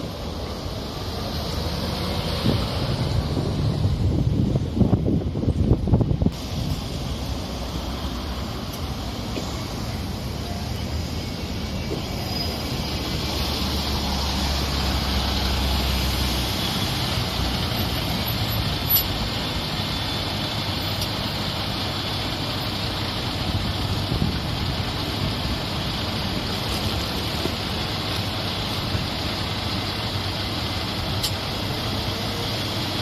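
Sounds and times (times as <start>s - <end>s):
bus engine running: 0.0s - 33.0s
road traffic: 0.0s - 33.0s.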